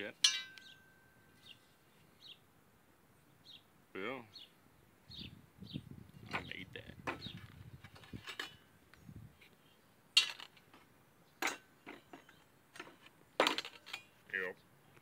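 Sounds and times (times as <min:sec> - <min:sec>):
steel pieces clinking: 0:00.2 - 0:00.8, 0:10.2 - 0:10.6, 0:11.4 - 0:14.2.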